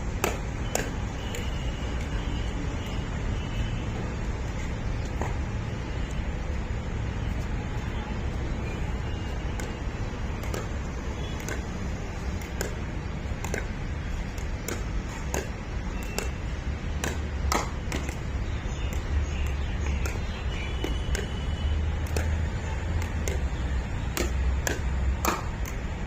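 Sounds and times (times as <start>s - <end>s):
paddles hitting plastic ball: 0.1s - 2.2s, 9.3s - 26.0s.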